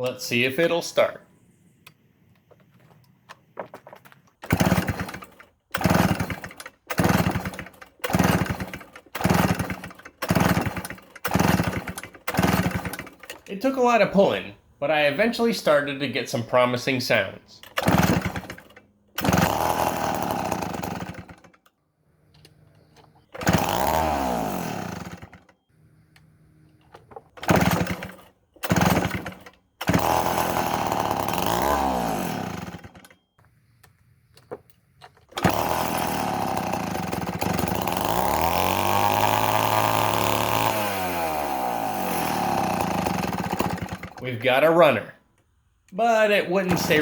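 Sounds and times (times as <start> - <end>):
chainsaw running in bursts: 4.4 - 13.4, 17.7 - 21.6, 23.3 - 25.5, 27.4 - 33.1, 35.3 - 44.7, 46.6 - 47.0.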